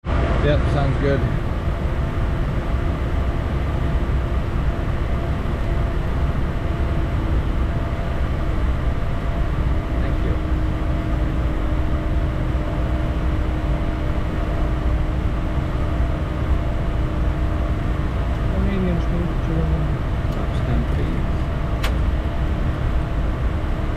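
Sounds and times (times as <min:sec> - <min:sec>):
jet engines and airflow rumble: 0:00.0 - 0:23.9.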